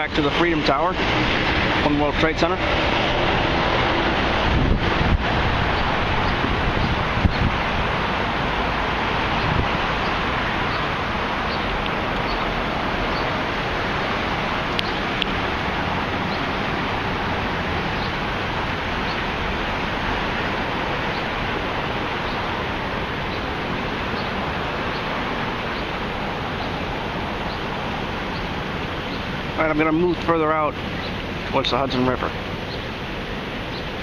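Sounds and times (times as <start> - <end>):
wind buffeting microphone: 0.0 - 31.6
city hum: 0.0 - 34.0.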